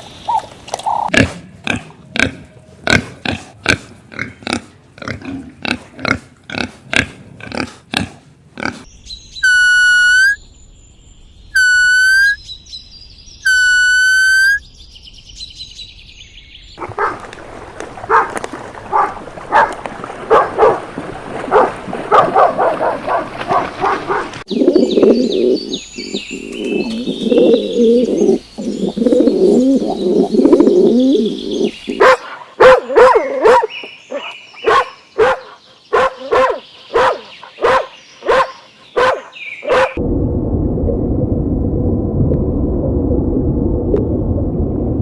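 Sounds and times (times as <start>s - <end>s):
evenly spaced loud animal calls: 9.4s - 10.4s
small birds chirping: 12.2s - 13.6s, 14.6s - 16.9s, 24.5s - 32.5s, 33.3s - 40.0s
dog barking: 16.8s - 17.2s, 18.1s - 20.8s, 21.5s - 24.4s, 32.0s - 40.0s
doves cooing: 21.5s - 32.2s.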